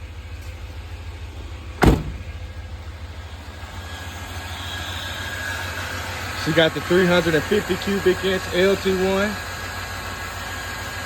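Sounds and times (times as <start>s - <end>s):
car engine idling: 0.0s - 11.0s
sharp knock: 1.8s - 2.2s.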